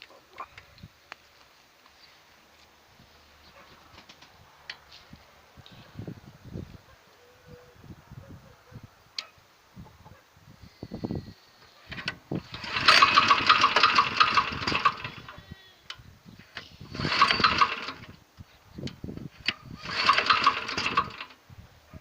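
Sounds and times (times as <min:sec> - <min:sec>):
walk-behind tractor engine bursts: 0:11.9 - 0:18.2, 0:18.8 - 0:21.4.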